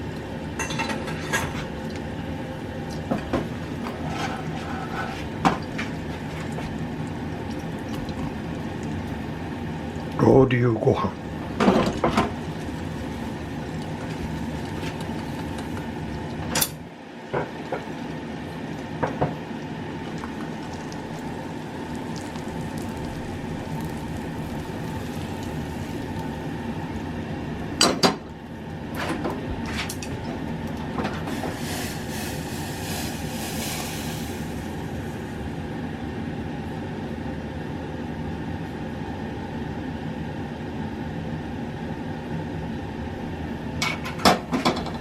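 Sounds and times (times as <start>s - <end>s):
steady background hum: 0.0s - 45.0s
dishes and utensils clinking: 0.6s - 1.7s.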